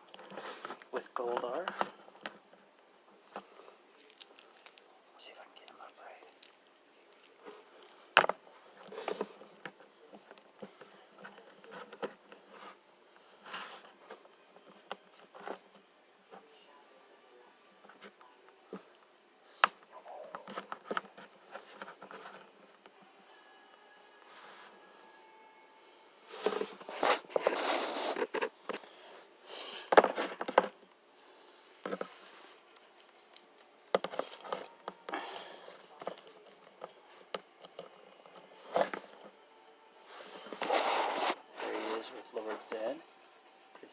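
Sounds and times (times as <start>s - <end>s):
plastic figure rustling: 0.0s - 2.6s, 3.3s - 4.9s, 5.6s - 15.8s, 19.6s - 22.8s, 26.3s - 29.2s, 29.9s - 30.8s, 31.8s - 39.3s, 40.1s - 43.0s.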